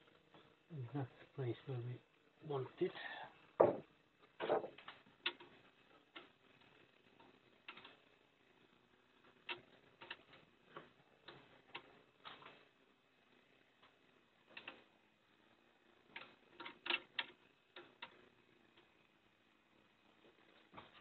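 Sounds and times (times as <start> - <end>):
knocks of plywood being handled: 3.6 - 4.8.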